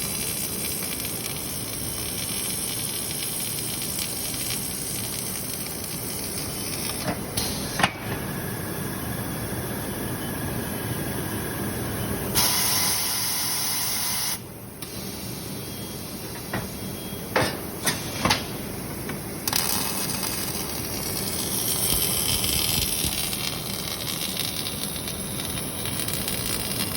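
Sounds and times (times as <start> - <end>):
welding hiss: 0.0 - 7.8, 12.4 - 15.6, 17.8 - 26.9.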